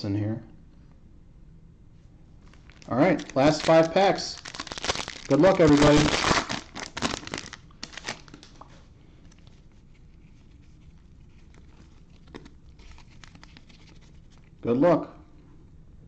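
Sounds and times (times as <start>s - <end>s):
foil wrappers crinkling and tearing: 2.4s - 8.7s, 9.3s - 14.6s.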